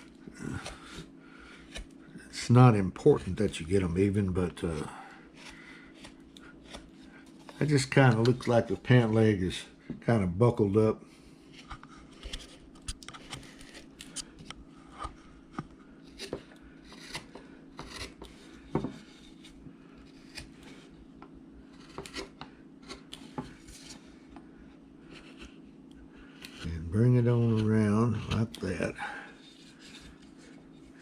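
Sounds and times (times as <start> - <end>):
gouge cutting wood: 16.2 - 18.4, 21.7 - 23.2.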